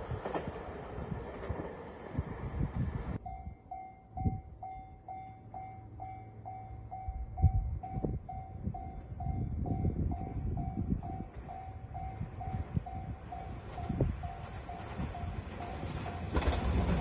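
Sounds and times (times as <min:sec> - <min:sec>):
wind on microphone: 0:00.0 - 0:04.8, 0:07.1 - 0:17.0
train rumbling past: 0:00.0 - 0:17.0
level crossing alarm ringing: 0:03.2 - 0:16.5.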